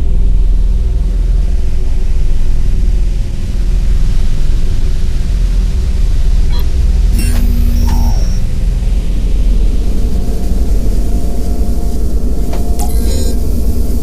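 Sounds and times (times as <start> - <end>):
faint electronic blips: 6.5 - 8.6, 12.7 - 13.9
spaceship engine drone: 6.5 - 8.7.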